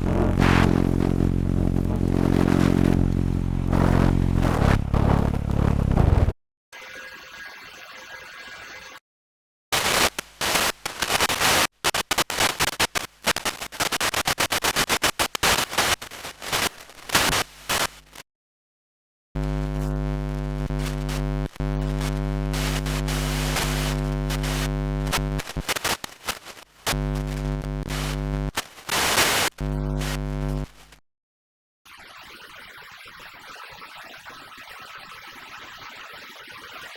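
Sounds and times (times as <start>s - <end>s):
loud low pitched drone: 0.0s - 6.3s
crackly record noise bursts: 22.1s - 30.8s.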